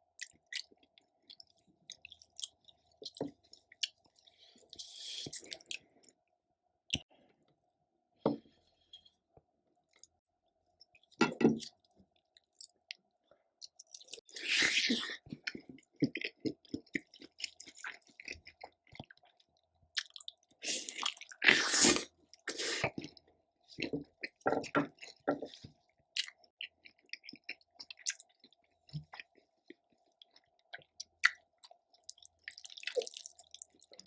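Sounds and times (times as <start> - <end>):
person chewing: 0.1 - 6.2, 13.6 - 34.0.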